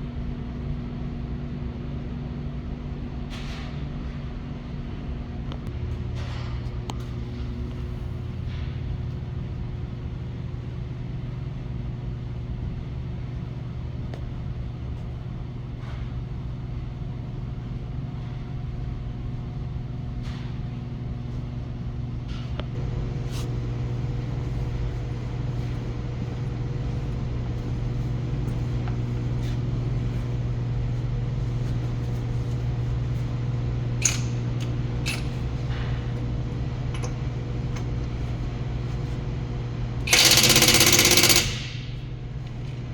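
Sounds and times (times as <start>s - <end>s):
motor humming: 22.5s - 42.9s.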